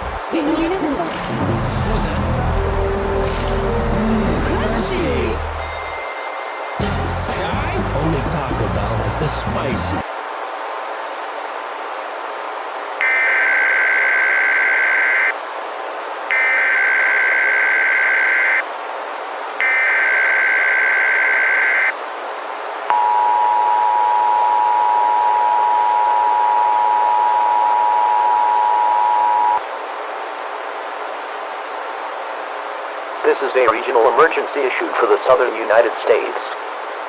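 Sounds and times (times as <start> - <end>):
radio hiss: 0.0 - 3.7, 19.5 - 22.6, 30.0 - 37.0
two-tone alarm tone: 13.0 - 15.4, 16.3 - 18.6, 19.6 - 21.9, 22.9 - 29.6.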